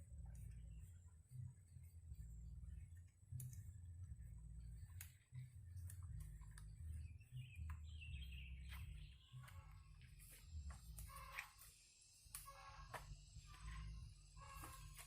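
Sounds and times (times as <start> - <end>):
faint bird calls: 5.0 - 11.7, 12.3 - 15.0.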